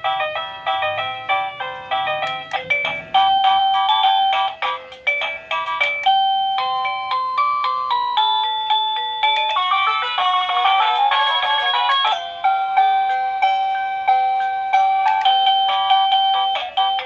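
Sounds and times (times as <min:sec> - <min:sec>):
doorbell electronic chime tunes: 0:00.0 - 0:17.0.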